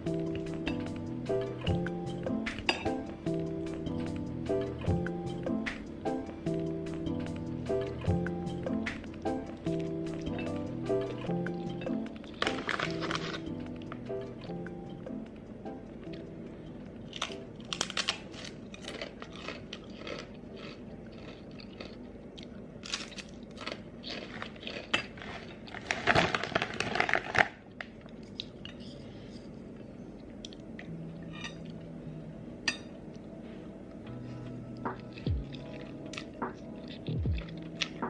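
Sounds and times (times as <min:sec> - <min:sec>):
crunching and crinkling: 0:12.1 - 0:14.1, 0:17.1 - 0:28.9.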